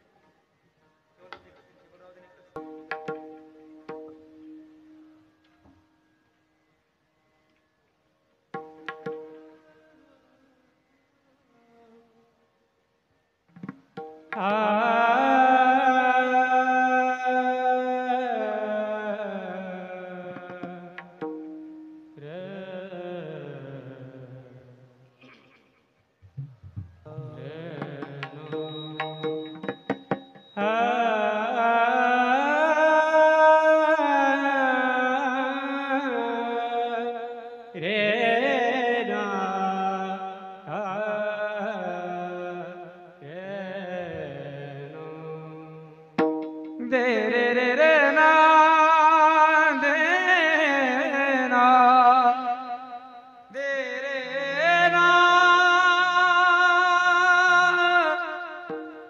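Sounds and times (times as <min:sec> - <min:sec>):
man singing devotional song: 0:14.3 - 0:21.3, 0:21.9 - 0:25.0, 0:27.0 - 0:46.2, 0:46.8 - 0:59.0
hand drum strokes: 0:26.2 - 0:30.6.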